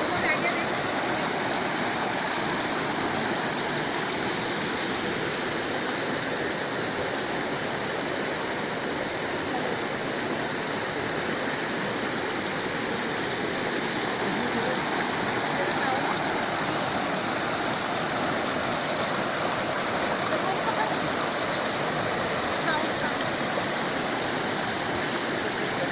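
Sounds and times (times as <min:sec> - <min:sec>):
river water rushing: 0:00.0 - 0:25.9.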